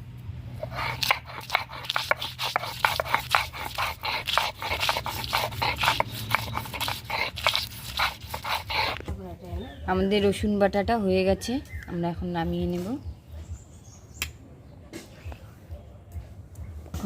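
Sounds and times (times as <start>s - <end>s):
crunching and scraping on grinding stone: 0.6s - 9.2s.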